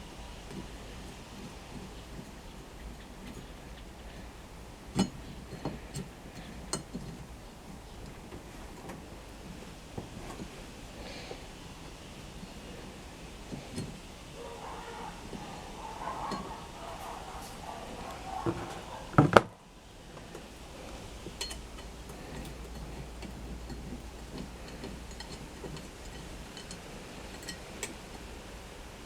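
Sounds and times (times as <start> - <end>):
metal tools clinking: 13.7 - 19.2.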